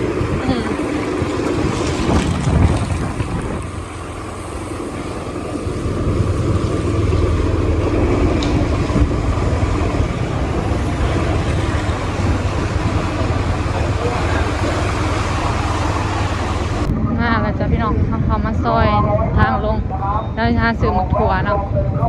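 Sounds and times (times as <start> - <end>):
vehicle engine running: 0.0 - 22.0
wind noise on microphone: 0.0 - 22.0.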